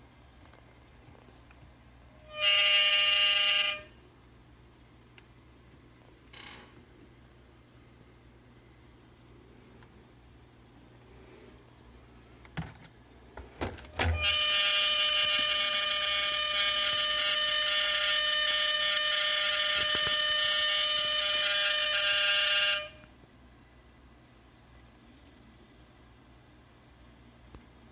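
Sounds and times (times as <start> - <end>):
gimbal motors electronic whine: 2.2 - 3.9, 14.0 - 23.1.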